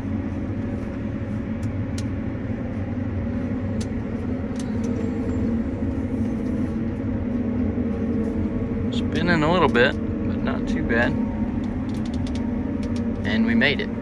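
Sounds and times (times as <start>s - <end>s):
diesel engine under load: 0.0s - 14.0s.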